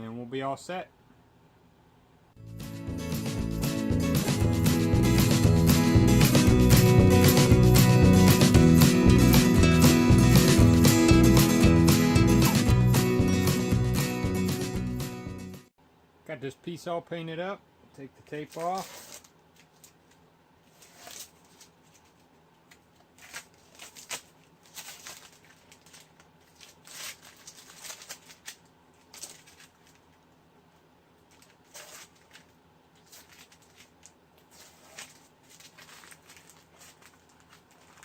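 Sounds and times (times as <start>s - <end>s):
tape being crumpled: 18.4s - 30.3s, 31.2s - 38.0s
masking tape being peeled off: 31.3s - 33.8s.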